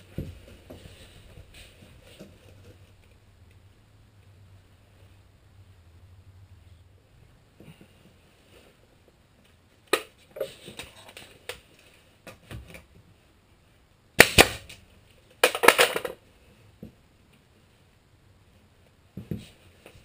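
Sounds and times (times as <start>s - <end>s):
knocks and handling sounds: 0.0s - 3.2s, 14.5s - 17.5s, 18.8s - 20.0s.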